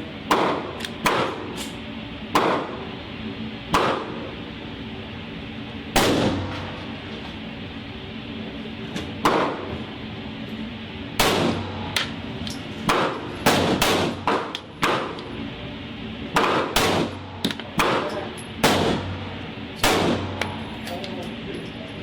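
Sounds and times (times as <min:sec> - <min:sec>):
low steady hum: 0:00.0 - 0:22.0
pistol shots: 0:00.3 - 0:01.6, 0:02.3 - 0:02.8, 0:03.7 - 0:04.2, 0:06.0 - 0:06.7, 0:09.2 - 0:09.7, 0:11.2 - 0:12.2, 0:12.8 - 0:15.3, 0:16.4 - 0:20.6
fainter distant gunshots: 0:17.8 - 0:20.4.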